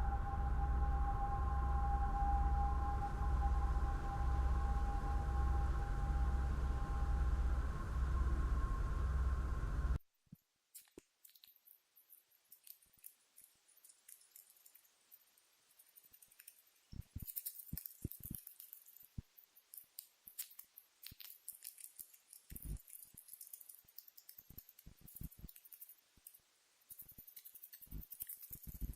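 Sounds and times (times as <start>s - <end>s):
rat grinding teeth: 10.7s - 28.9s.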